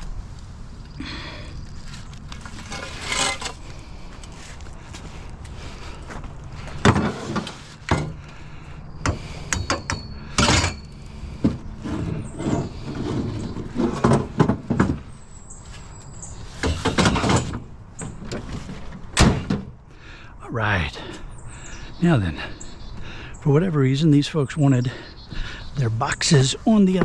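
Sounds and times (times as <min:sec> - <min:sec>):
boxes knocking and scraping: 0:02.4 - 0:03.6, 0:06.7 - 0:08.3, 0:09.1 - 0:15.2, 0:16.5 - 0:19.8.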